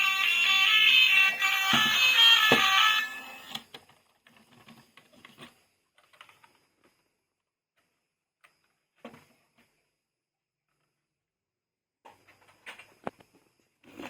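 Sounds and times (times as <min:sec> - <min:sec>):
melody: 0:00.0 - 0:03.6.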